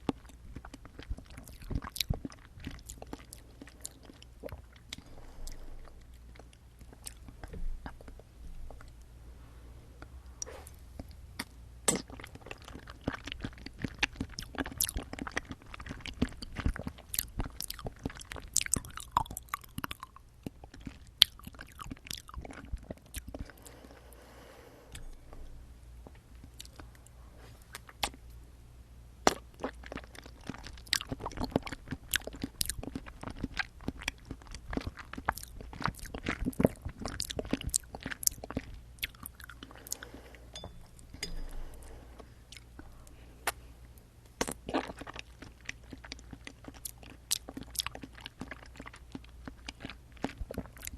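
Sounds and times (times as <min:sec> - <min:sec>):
chewing wet clicky mouth sounds: 0:11.0 - 0:23.6, 0:27.7 - 0:28.2, 0:29.3 - 0:41.4, 0:44.2 - 0:50.9.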